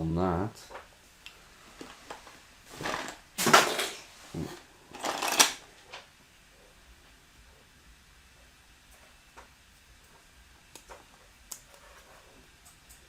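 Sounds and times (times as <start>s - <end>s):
plastic bricks rattling: 4.9s - 5.6s.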